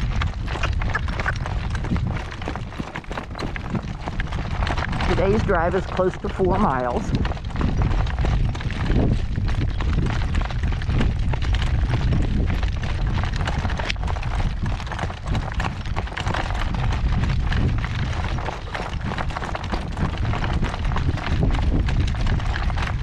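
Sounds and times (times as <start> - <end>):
hooves clip-clopping on gravel: 0.0 - 23.0
low steady rumble: 0.0 - 23.0.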